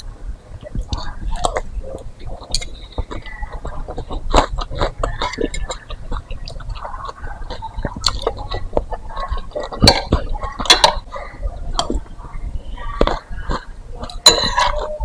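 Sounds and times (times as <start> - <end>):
chewing: 0.0 - 15.0
slurping soup: 0.6 - 14.9
utensils clinking on bowl: 2.2 - 6.9, 7.5 - 12.0, 14.0 - 15.0.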